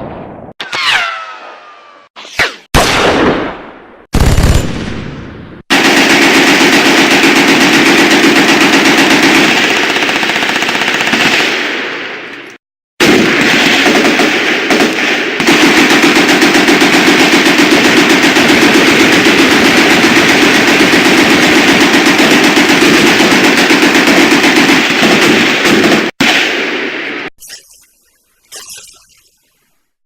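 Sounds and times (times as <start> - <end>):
rifle automatic gunfire: 4.2 - 4.8, 5.7 - 11.7, 13.0 - 26.4.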